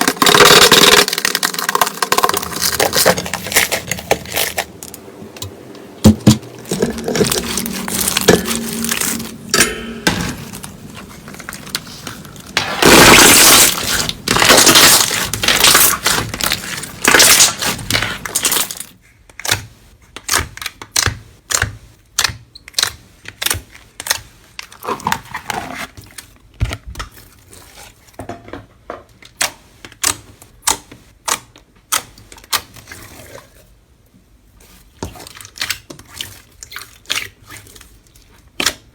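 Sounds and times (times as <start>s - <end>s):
slime crackling and crunching: 0.0s - 5.1s, 6.5s - 18.9s
slime popping: 12.6s - 18.7s.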